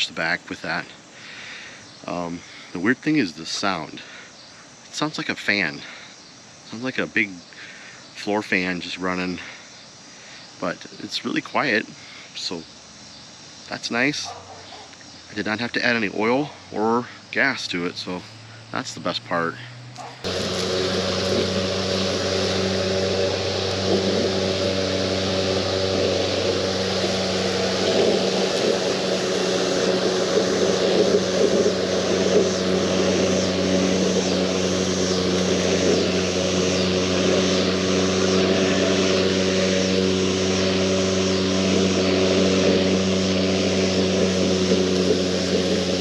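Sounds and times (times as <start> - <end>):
lawn mower running: 19.9 - 46.0
pulsing high buzz: 20.2 - 46.0.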